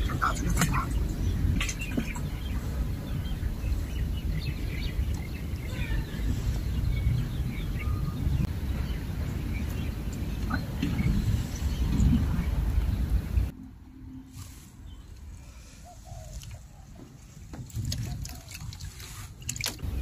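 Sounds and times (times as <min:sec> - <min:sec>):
small birds chirping: 0:00.0 - 0:13.5, 0:14.1 - 0:20.0
wind on microphone: 0:00.0 - 0:13.5.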